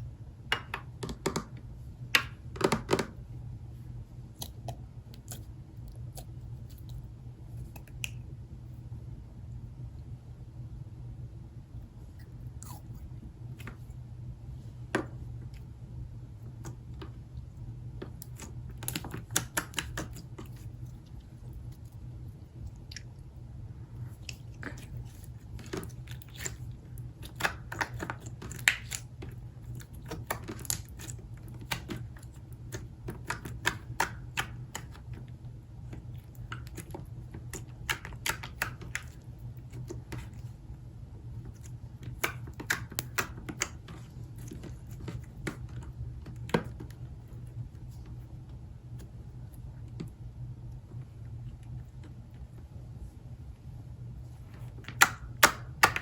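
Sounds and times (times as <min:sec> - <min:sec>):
hands squishing slime: 0:18.0 - 0:23.2, 0:24.0 - 0:35.3, 0:35.9 - 0:40.5, 0:41.4 - 0:47.0.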